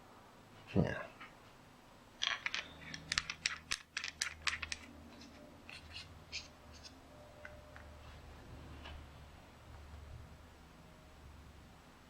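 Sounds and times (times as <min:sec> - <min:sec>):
small metal parts clicking: 0:02.2 - 0:04.9.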